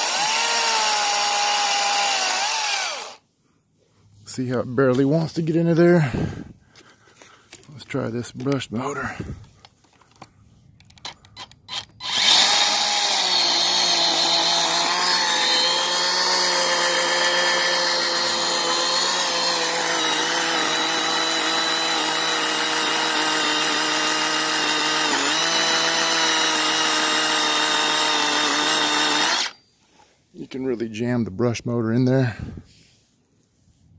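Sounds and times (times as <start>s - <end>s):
electric chainsaw cutting wood: 0.0s - 3.2s, 11.4s - 29.6s.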